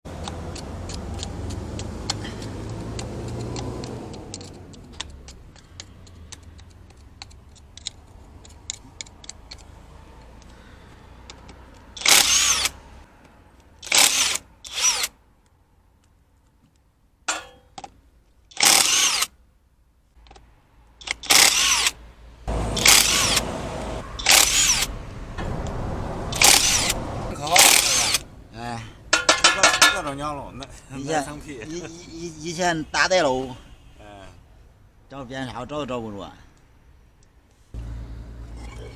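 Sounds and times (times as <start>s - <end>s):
sharp metallic clicks and taps: 0.1s - 12.3s, 29.1s - 30.0s
handheld power tool bursts: 12.0s - 12.8s, 13.8s - 15.1s, 18.5s - 19.3s, 21.0s - 22.0s, 22.8s - 23.4s, 24.2s - 24.9s, 26.3s - 28.2s.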